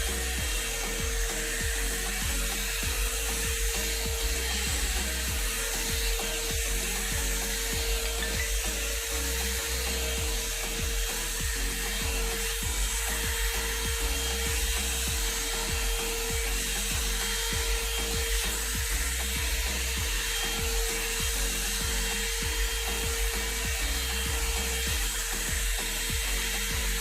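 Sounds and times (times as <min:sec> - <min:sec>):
hair dryer blowing air: 0:00.0 - 0:27.0.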